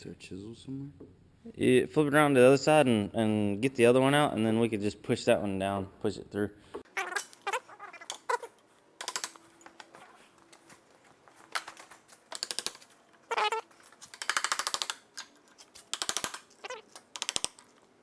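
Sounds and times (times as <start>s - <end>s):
hand tool rapid clicking: 9.0s - 9.9s, 11.5s - 17.9s.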